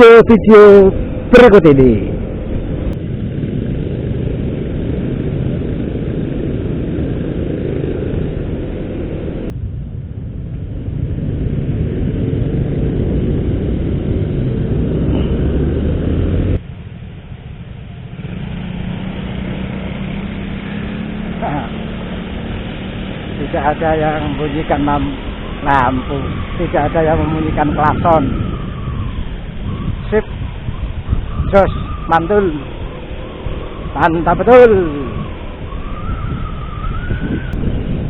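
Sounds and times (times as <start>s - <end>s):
vehicle engines running: 0.0s - 38.0s.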